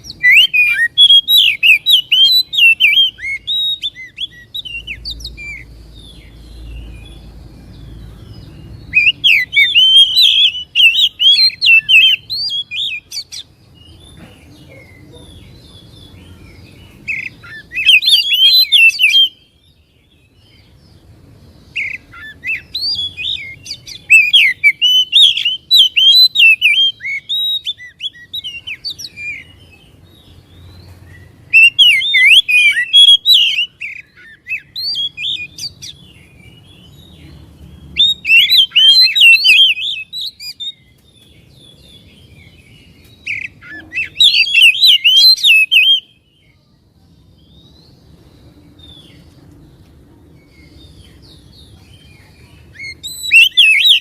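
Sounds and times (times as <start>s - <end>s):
bird chirping and whistling: 0.0s - 7.2s, 8.8s - 14.0s, 16.8s - 19.6s, 21.7s - 29.7s, 30.6s - 37.1s, 37.9s - 46.3s, 52.7s - 54.0s.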